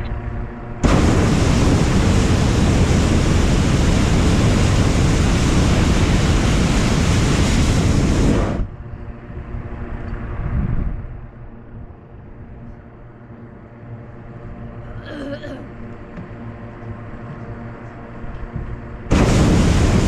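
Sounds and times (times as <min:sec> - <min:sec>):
propane burner firing: 0:00.8 - 0:08.7, 0:19.1 - 0:20.0.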